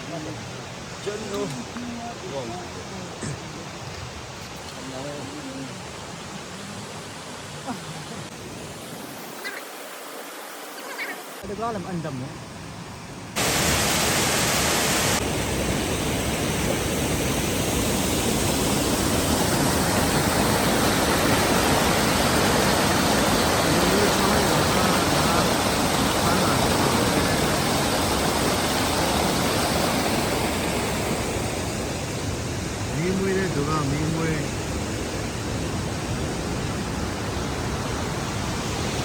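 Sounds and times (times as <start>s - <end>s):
rushing river water: 0.0s - 39.0s.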